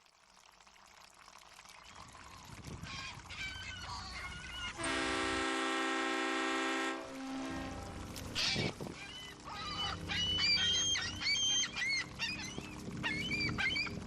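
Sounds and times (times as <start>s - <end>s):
water noise: 0.0s - 14.0s
seagulls calling: 2.2s - 5.0s, 8.3s - 14.0s
boat horn blast: 4.8s - 8.1s.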